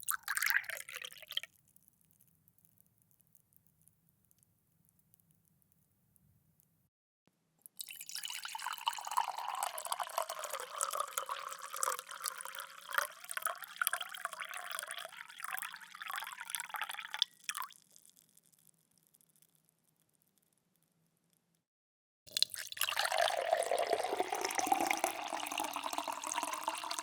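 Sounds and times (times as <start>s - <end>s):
water pouring into a glass: 0.0s - 1.5s, 7.8s - 17.7s, 22.3s - 27.0s
water dripping: 0.0s - 3.4s, 7.8s - 17.8s, 22.3s - 27.0s.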